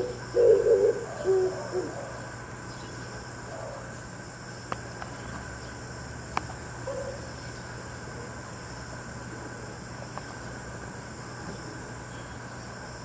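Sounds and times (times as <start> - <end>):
dove cooing: 0.0 - 2.6, 3.2 - 4.1, 6.8 - 8.4
distant dove cooing: 0.0 - 4.2, 6.8 - 8.4.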